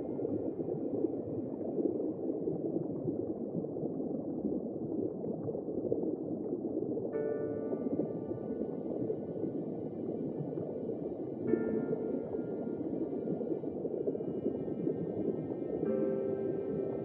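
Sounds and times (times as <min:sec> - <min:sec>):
muffled bubbling rushing water: 0:00.0 - 0:17.0
background music sustained tones: 0:07.2 - 0:17.0.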